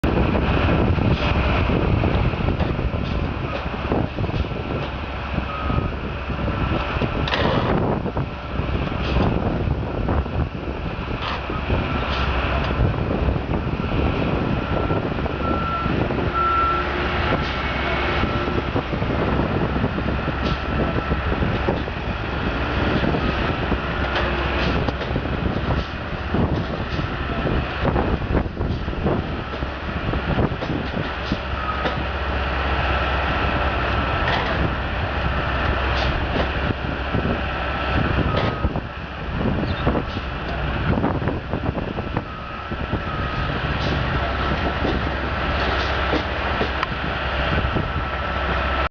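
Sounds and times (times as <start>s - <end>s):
heavy vehicle engine running: 0.0s - 48.9s
reversing alarm beeps: 5.5s - 5.9s, 14.7s - 16.9s.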